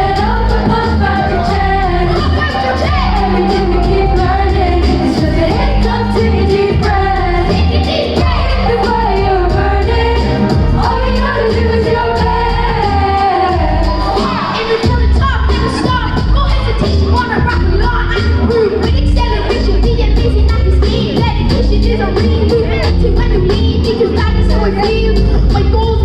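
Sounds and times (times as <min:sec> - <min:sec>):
drum beat: 0:00.0 - 0:26.0
heavy bass: 0:00.0 - 0:26.0.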